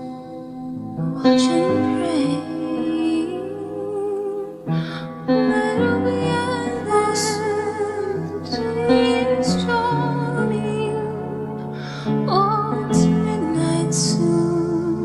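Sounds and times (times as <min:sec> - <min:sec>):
slow gentle music: 0:00.0 - 0:15.0.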